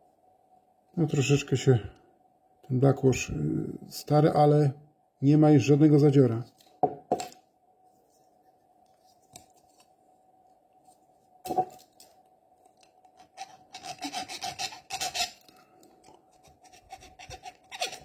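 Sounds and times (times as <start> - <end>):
metal file rasping on steel: 13.2 - 15.5, 16.3 - 18.0.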